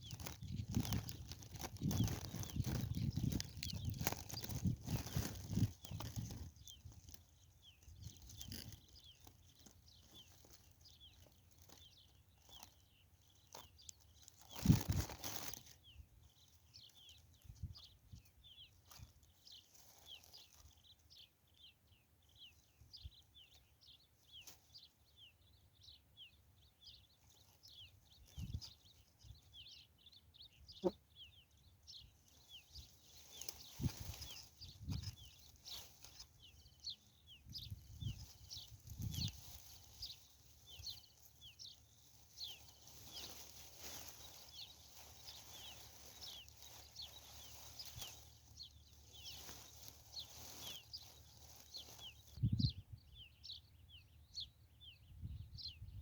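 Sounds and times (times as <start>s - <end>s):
small birds chirping: 0.0s - 56.0s
loud rustling: 38.2s - 52.0s.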